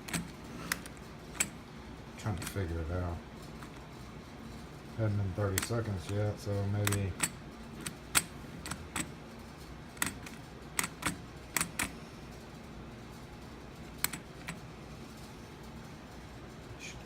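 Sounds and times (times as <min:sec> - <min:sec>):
keypad lock clicks and taps: 0:10.0 - 0:11.9.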